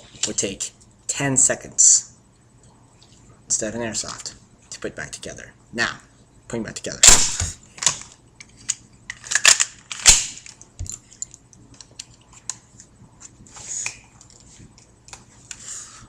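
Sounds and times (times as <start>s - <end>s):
pistol parts clacking into place: 7.0s - 12.6s.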